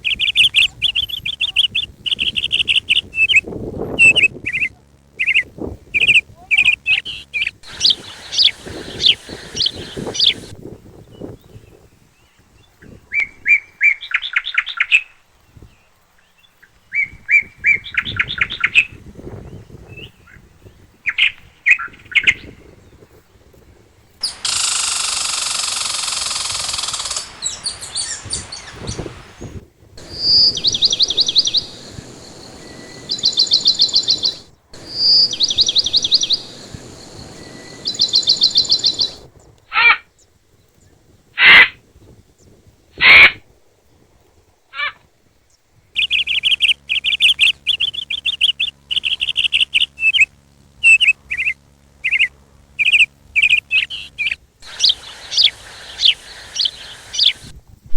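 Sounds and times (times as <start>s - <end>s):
songbirds singing trills: 0.0s - 43.4s, 44.8s - 57.5s
loud rushing noise: 7.6s - 10.6s, 24.2s - 39.3s.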